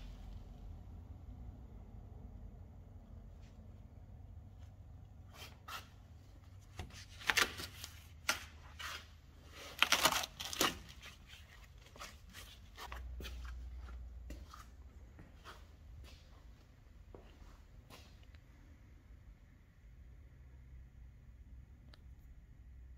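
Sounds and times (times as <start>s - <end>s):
tearing and scraping bursts: 8.7s - 12.8s.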